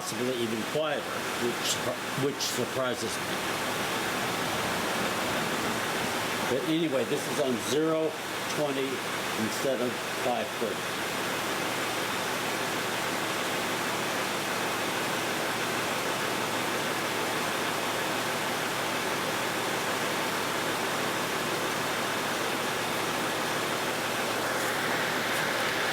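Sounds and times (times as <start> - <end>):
air conditioning rush: 0.0 - 10.8, 23.0 - 25.9
car engine idling: 24.3 - 25.9.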